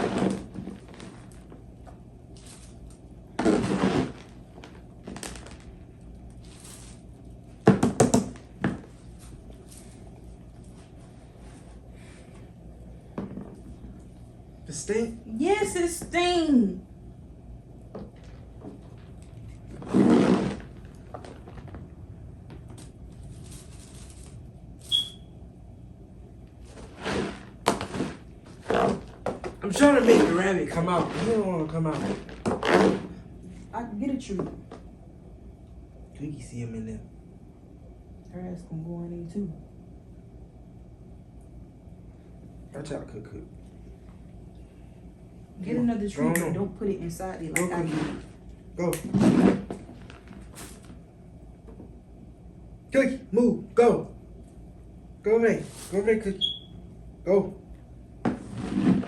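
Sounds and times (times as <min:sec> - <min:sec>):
rustling clatter: 0:22.6 - 0:24.4
brief high squeak: 0:24.9 - 0:25.3, 0:56.4 - 0:56.7
brief rustling scrape: 0:55.6 - 0:56.0.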